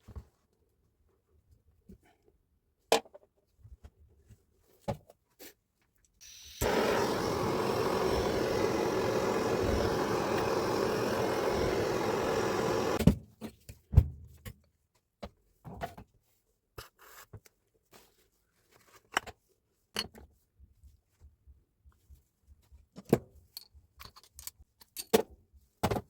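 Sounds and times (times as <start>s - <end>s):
electric power tool running: 6.2s - 13.0s.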